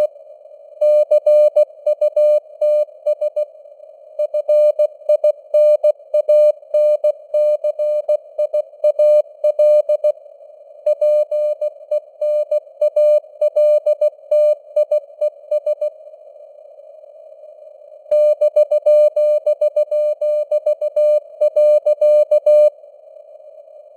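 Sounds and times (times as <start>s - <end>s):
morse code tone: 18.1s - 22.7s.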